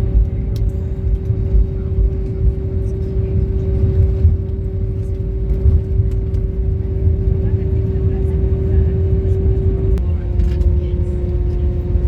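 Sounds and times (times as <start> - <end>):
airliner cabin rumble: 0.0 - 12.0.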